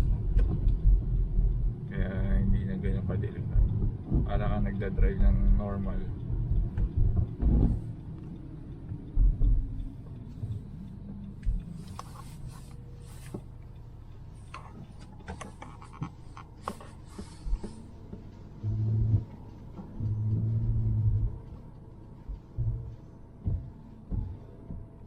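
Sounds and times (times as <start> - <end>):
low thumps: 0.0 - 11.7, 17.1 - 25.0
engine and road rumble: 0.0 - 25.0.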